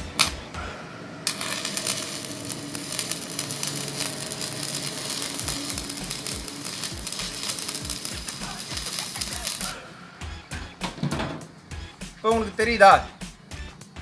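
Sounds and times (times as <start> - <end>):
welding arc crackling: 1.3 - 10.4.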